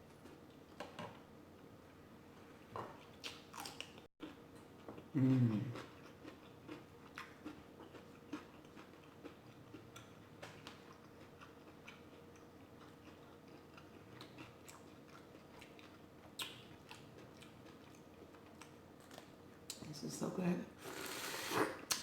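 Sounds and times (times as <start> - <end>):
close-up chewing: 3.0 - 19.3.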